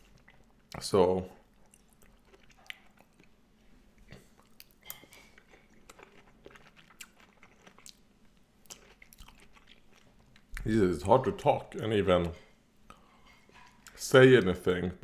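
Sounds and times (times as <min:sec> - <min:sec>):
close-up chewing: 0:00.0 - 0:10.7, 0:12.2 - 0:14.0.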